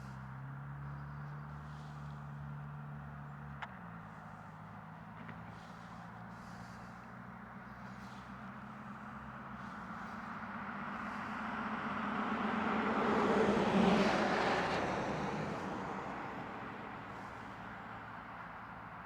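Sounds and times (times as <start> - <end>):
vehicle passing by: 9.0 - 18.8.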